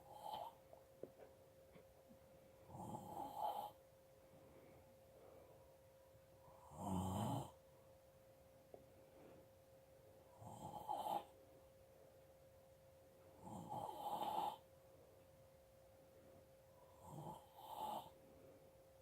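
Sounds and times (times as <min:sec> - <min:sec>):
person snoring: 0:02.7 - 0:03.8, 0:06.5 - 0:07.6, 0:10.3 - 0:11.3, 0:13.4 - 0:14.6, 0:16.9 - 0:18.2.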